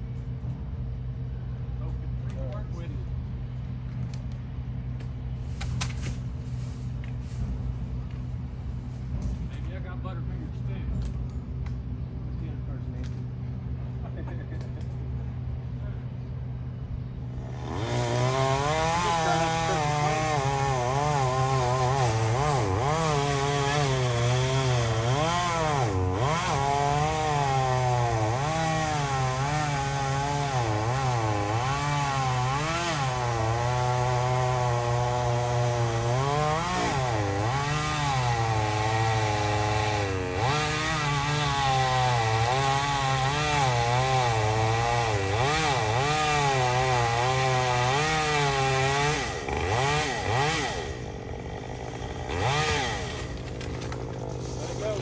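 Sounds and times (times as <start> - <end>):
chainsaw cutting wood: 17.3 - 55.0.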